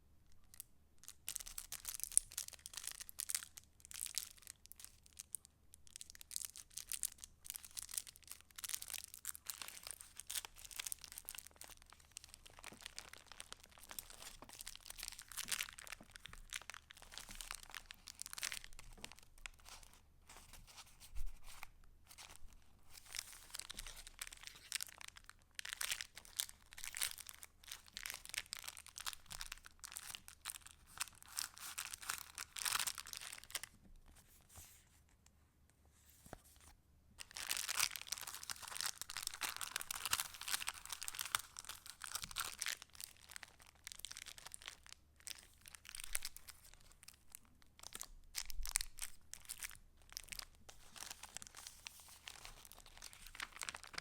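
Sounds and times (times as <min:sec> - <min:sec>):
paper pages rustling: 0:34.1 - 0:35.1, 0:36.0 - 0:36.7.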